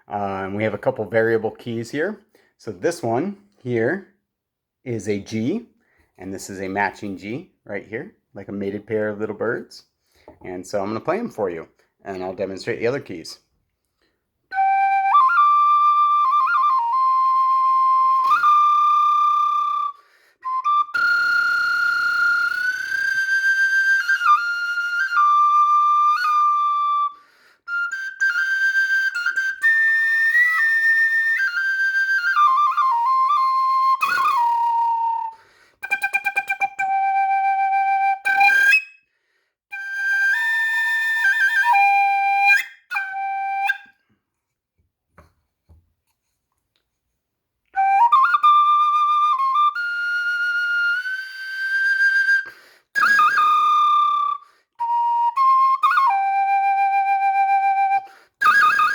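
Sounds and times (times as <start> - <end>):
wooden flute melody: 14.5 - 39.1, 39.7 - 44.2, 47.7 - 58.9.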